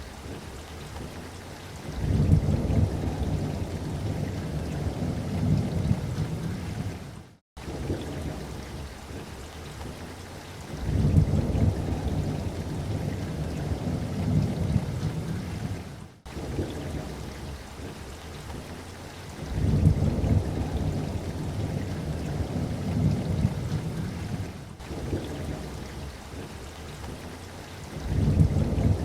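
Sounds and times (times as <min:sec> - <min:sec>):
rain hiss: 0:00.0 - 0:29.0
rolling thunder rumbles: 0:01.8 - 0:08.9, 0:10.7 - 0:18.0, 0:19.4 - 0:27.2, 0:28.0 - 0:29.0.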